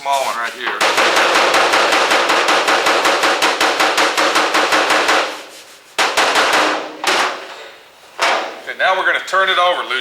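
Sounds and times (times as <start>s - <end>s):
hammer tapping on steel panel: 0.7s - 5.4s.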